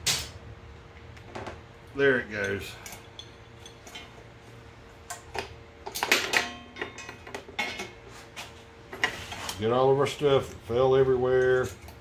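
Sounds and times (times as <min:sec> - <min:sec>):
light clicks of falling parts: 0:02.3 - 0:04.2, 0:05.0 - 0:08.0.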